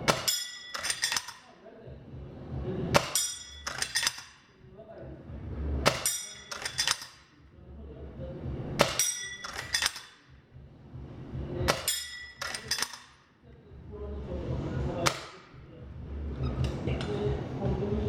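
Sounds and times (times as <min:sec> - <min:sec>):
airsoft rifle shots: 0:00.0 - 0:00.4, 0:08.8 - 0:09.1
pellet striking steel plate: 0:00.0 - 0:01.5, 0:02.9 - 0:04.5, 0:05.8 - 0:07.3, 0:08.8 - 0:10.3, 0:11.7 - 0:13.2, 0:15.0 - 0:15.5.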